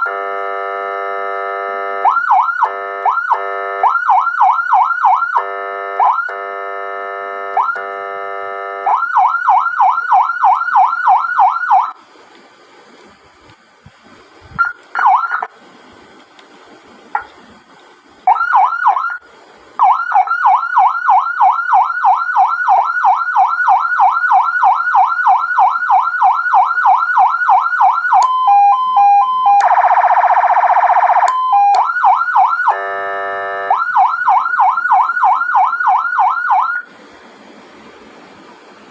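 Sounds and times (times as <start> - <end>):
steady horn blast: 0.0 - 3.9, 5.3 - 8.9, 32.7 - 33.8
electronic siren yelp: 0.0 - 12.0, 14.6 - 15.5, 18.3 - 19.2, 19.8 - 36.9
two-tone siren: 0.0 - 12.0, 18.3 - 19.2, 19.8 - 36.9.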